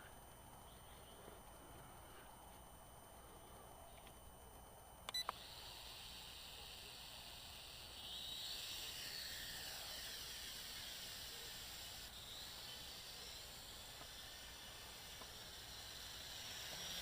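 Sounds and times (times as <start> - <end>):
sharp clicks: 5.0 - 5.4
toy quadcopter propellers whining: 5.2 - 17.0.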